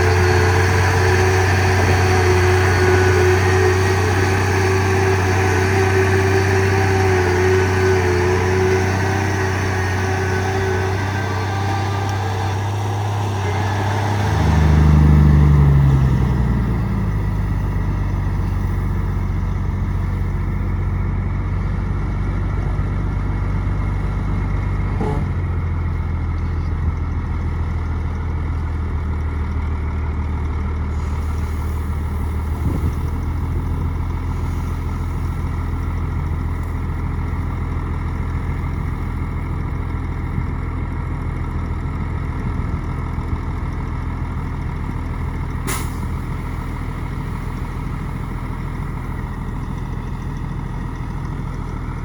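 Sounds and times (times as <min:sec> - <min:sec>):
bulldozer diesel engine running: 0:00.0 - 0:52.0.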